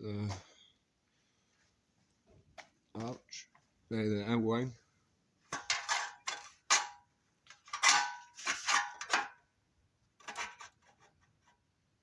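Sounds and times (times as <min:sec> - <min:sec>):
steel panel clattering and scraping: 0:05.5 - 0:09.4, 0:10.2 - 0:11.2.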